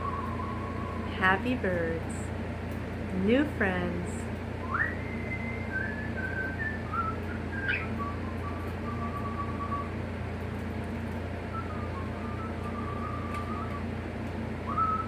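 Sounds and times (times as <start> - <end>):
soft whistling of a tune: 0.0 - 1.1, 4.6 - 10.2, 11.4 - 15.0
steady low hum: 0.0 - 15.0.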